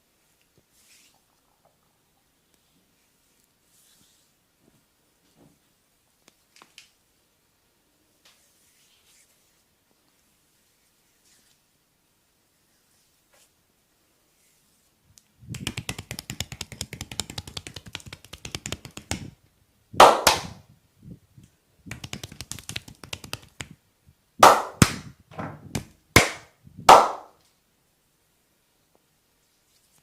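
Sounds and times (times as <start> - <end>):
loud smacks on back: 20.0 - 20.6, 24.4 - 27.3.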